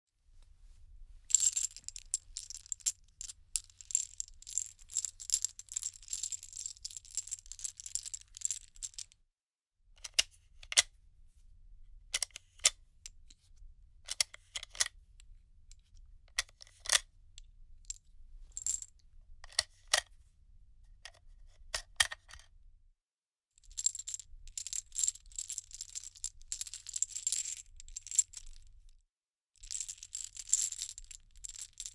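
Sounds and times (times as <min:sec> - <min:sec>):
small metal objects jingling: 0:01.3 - 0:02.9, 0:29.6 - 0:31.9.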